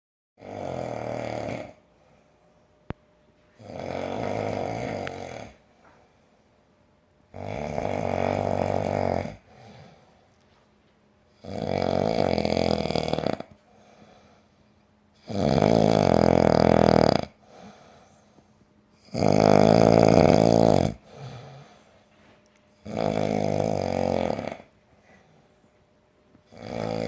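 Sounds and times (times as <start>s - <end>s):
heavy snoring: 0.4s - 1.9s, 3.6s - 6.0s, 7.3s - 10.2s, 11.4s - 14.5s, 15.2s - 18.3s, 19.0s - 22.0s, 22.8s - 25.5s, 26.5s - 27.0s.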